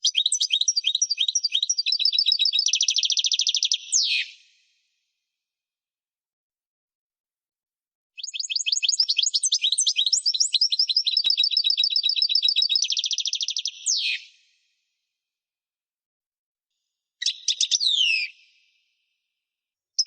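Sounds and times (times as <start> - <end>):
songbird singing: 0.0 - 4.3, 8.2 - 14.3, 17.2 - 18.4.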